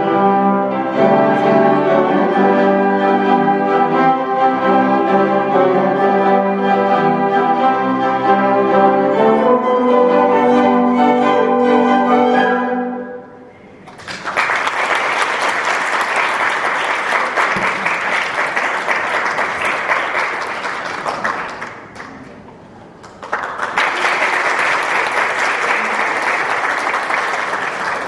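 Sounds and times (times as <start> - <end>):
congregation applauding: 13.8 - 28.0.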